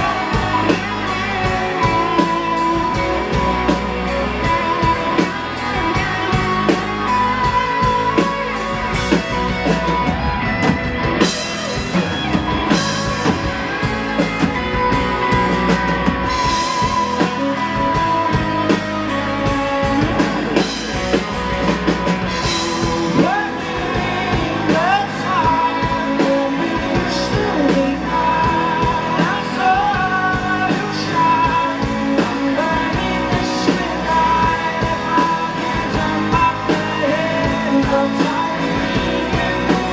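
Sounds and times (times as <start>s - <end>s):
person singing: 0.0s - 10.2s, 22.4s - 39.9s
drum kit: 0.0s - 39.9s
electric guitar: 0.0s - 39.9s.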